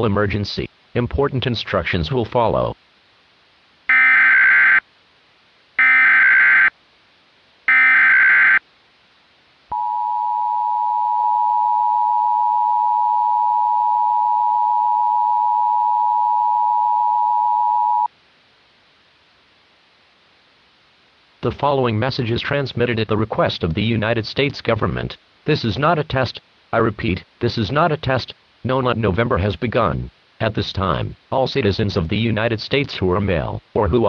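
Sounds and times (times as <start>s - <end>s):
shrill warbling data bursts: 3.9s - 4.8s, 5.8s - 6.7s, 7.7s - 8.6s
steady two-tone alert beep: 5.8s - 6.7s.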